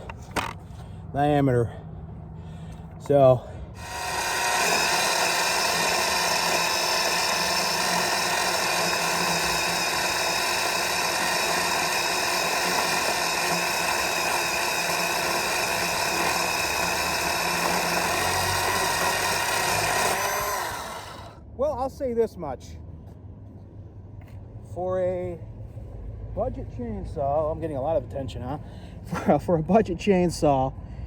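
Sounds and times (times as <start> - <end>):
chainsaw cutting through log: 3.8 - 21.4.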